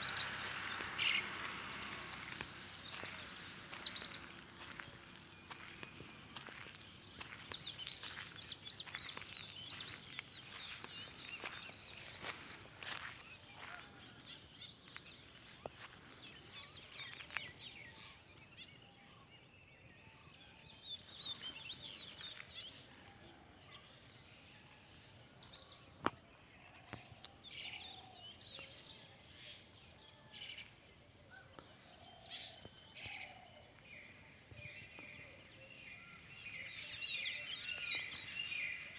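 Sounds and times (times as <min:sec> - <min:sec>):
insect trill: 0:00.0 - 0:38.9
small birds chirping: 0:00.0 - 0:38.9.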